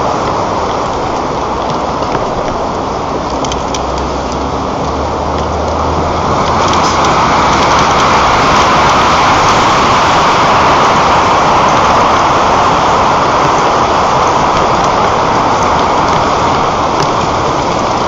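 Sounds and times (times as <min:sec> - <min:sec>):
strong wind on microphone: 0:04.1 - 0:18.0.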